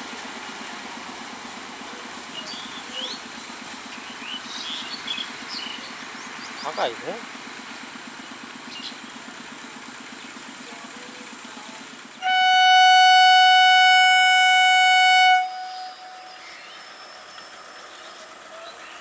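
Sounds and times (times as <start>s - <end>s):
engine idling: 0.0s - 19.0s
locomotive air horn blast: 12.2s - 16.7s.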